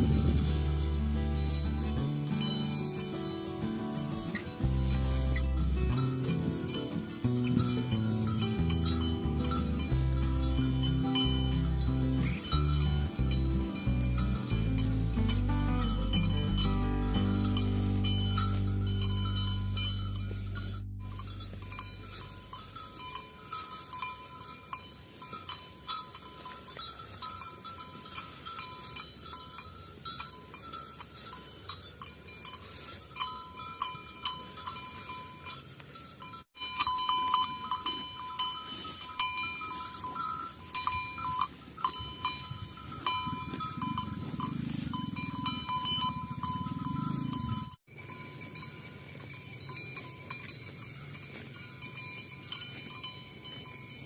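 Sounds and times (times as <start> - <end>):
low music: 0.0 - 22.8
livestock bells clanking: 0.0 - 54.0.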